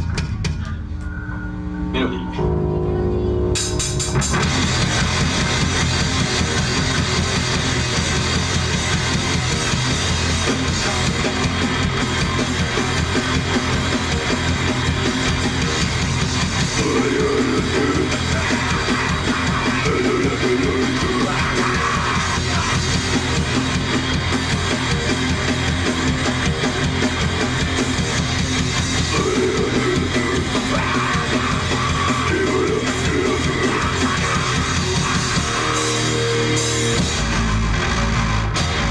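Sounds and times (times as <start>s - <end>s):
drum kit: 0.0s - 1.8s, 2.4s - 38.9s
distorted electric guitar: 0.0s - 38.9s
heavy rock band playing: 0.0s - 38.9s.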